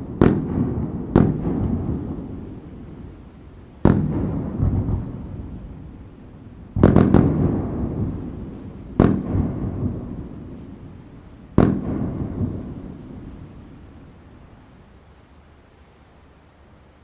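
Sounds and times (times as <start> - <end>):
fireworks bangs: 0.0 - 3.2, 3.8 - 6.1, 6.7 - 13.6.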